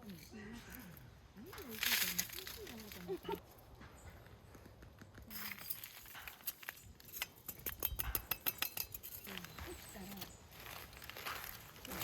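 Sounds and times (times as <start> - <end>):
cookware and utensils clinking: 5.3 - 10.2.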